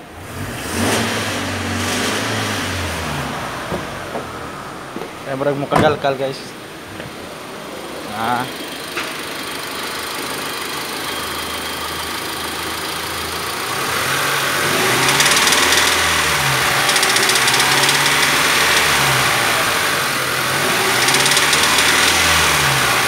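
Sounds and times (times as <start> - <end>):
pickup engine idling and revving: 0.0 - 5.6, 6.6 - 23.0
engine rattling clatter: 9.9 - 23.0.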